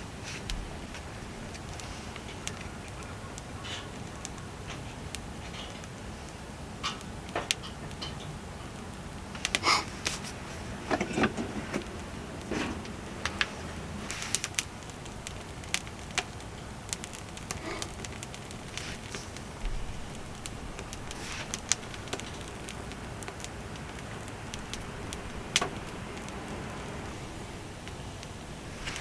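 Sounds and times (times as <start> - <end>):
wood fire crackling: 0.0 - 29.0.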